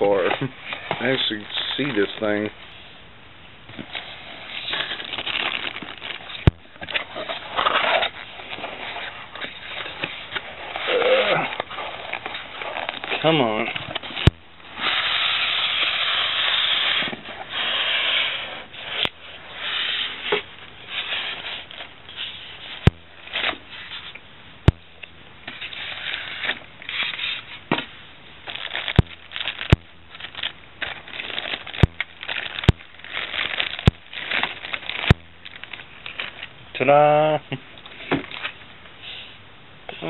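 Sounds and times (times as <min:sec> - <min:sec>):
plastic packaging crinkling: 0:03.9 - 0:18.4, 0:28.4 - 0:36.6, 0:37.8 - 0:38.6.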